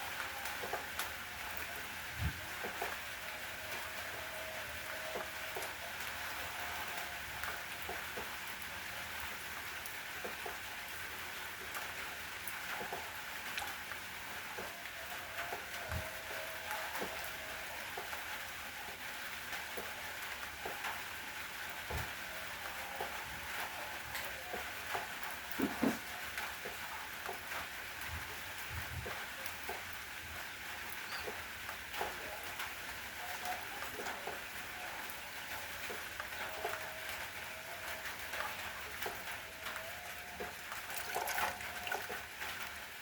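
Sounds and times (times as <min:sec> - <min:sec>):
steady rain falling: 0:00.0 - 0:43.0
drips ticking: 0:30.8 - 0:42.8.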